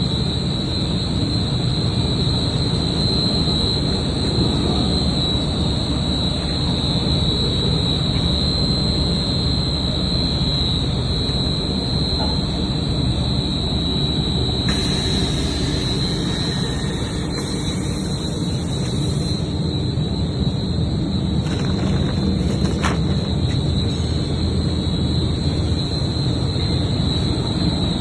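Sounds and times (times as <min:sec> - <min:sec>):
mixer machine roaring with whine: 0:00.0 - 0:28.0
hiss: 0:14.6 - 0:19.9.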